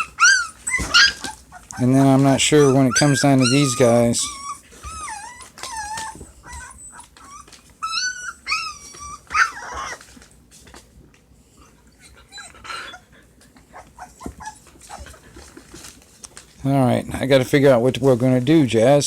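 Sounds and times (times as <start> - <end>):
puppies whining and whimpering: 0.0 - 10.3, 11.6 - 16.0.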